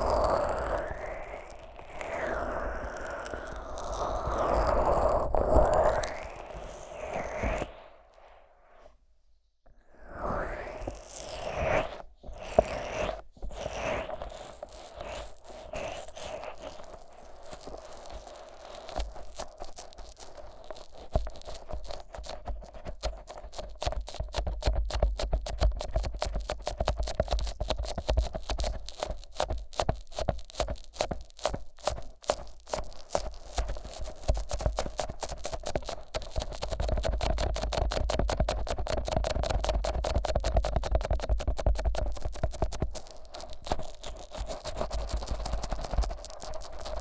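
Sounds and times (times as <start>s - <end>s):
fingers rubbing microphone: 10.8s - 47.0s.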